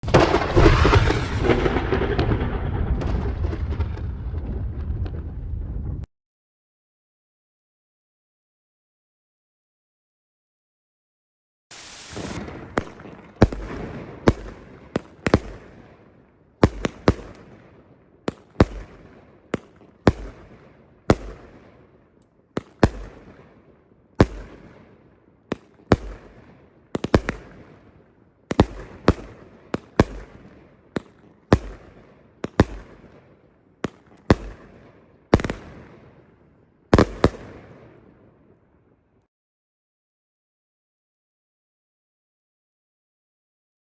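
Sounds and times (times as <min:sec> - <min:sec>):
firework shots firing: 0:00.0 - 0:05.4, 0:11.7 - 0:21.8, 0:22.6 - 0:23.5, 0:24.2 - 0:24.9, 0:25.5 - 0:27.9, 0:28.5 - 0:33.2, 0:33.8 - 0:36.3, 0:36.9 - 0:38.1
firework crackle: 0:00.0 - 0:06.1, 0:11.7 - 0:14.7
fuse hiss: 0:11.7 - 0:12.4.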